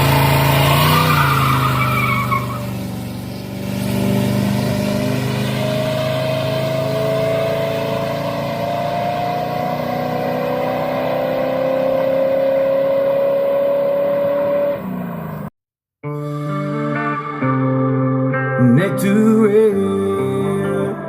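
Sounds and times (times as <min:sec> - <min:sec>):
car engine running hard: 0:00.0 - 0:15.5
high rising tone: 0:16.1 - 0:21.0.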